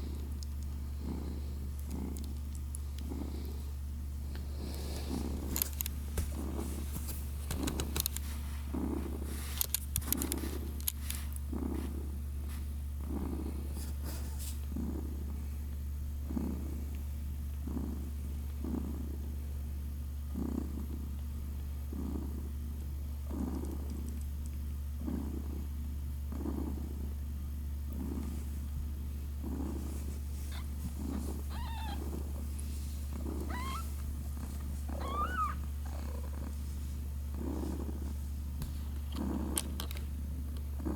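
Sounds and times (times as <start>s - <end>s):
cat purring: 0.0s - 40.9s
kitten mewing: 31.4s - 32.2s, 33.3s - 34.0s, 34.9s - 36.3s.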